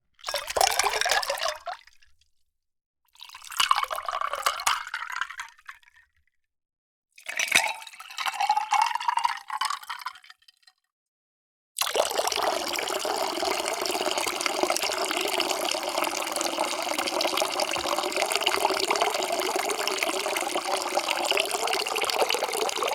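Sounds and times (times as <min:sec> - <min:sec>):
water pouring into container: 0:11.8 - 0:22.9.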